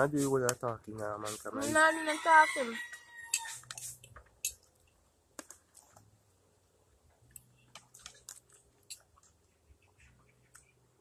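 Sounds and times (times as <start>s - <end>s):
people eating and chewing: 3.3s - 6.2s, 6.9s - 10.8s.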